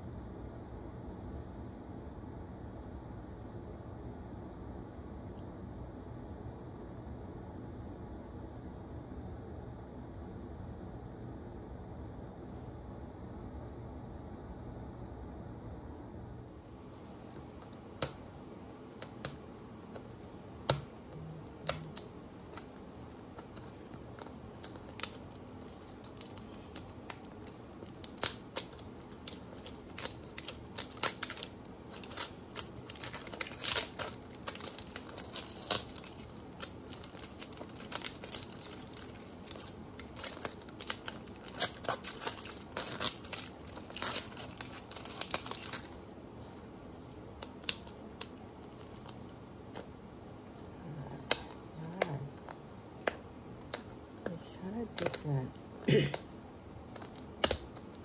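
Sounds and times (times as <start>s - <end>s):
plastic packaging crinkling: 16.8s - 53.0s, 53.6s - 58.0s.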